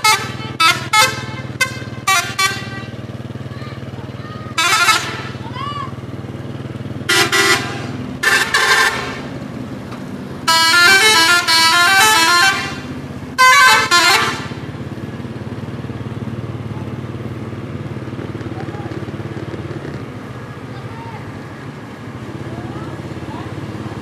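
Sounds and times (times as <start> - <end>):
multi-tone bus horn tune: 0.0 - 3.4, 4.4 - 5.5, 7.0 - 9.4, 10.4 - 14.8
low engine hum: 0.0 - 24.0.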